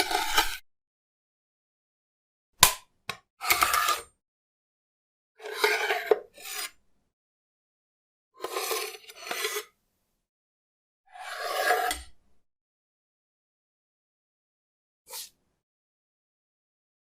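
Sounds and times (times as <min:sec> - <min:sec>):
rasping scrapes: 0:00.0 - 0:00.6, 0:05.4 - 0:06.8, 0:08.4 - 0:09.8, 0:11.1 - 0:12.1.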